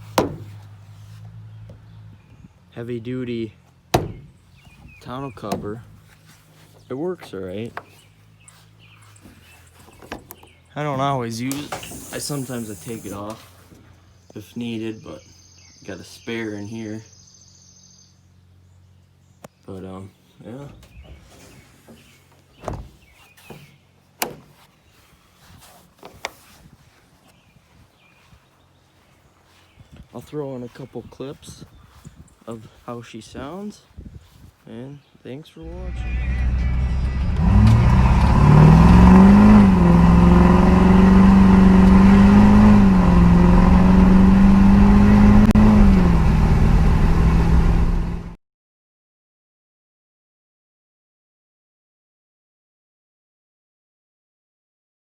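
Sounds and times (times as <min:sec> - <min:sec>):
dull thump: 0:00.0 - 0:01.0, 0:03.9 - 0:06.3, 0:09.1 - 0:10.5, 0:20.6 - 0:24.7
diesel engine droning: 0:00.0 - 0:14.6, 0:35.6 - 0:48.4.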